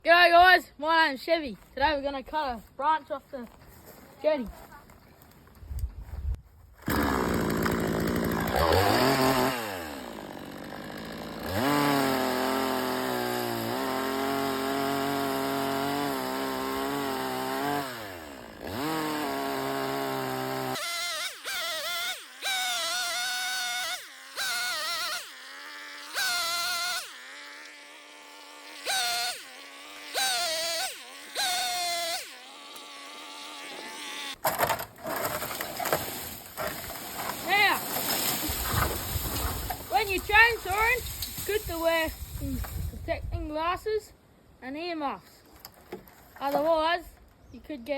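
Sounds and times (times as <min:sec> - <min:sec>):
chainsaw revving: 0:06.8 - 0:34.4, 0:35.0 - 0:43.3.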